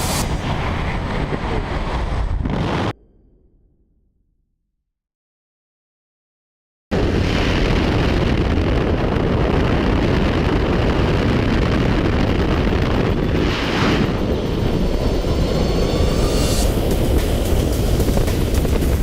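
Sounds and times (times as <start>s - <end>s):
wind buffeting microphone: 7.0s - 19.0s.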